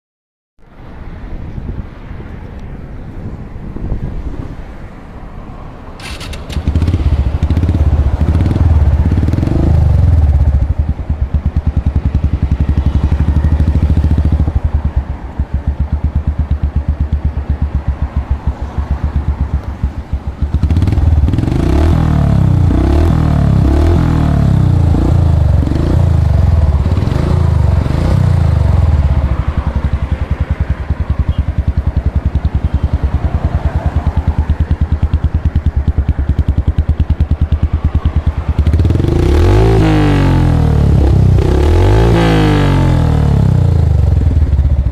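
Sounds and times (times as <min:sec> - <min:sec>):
motorcycle engine revving: 0:06.0 - 0:44.9.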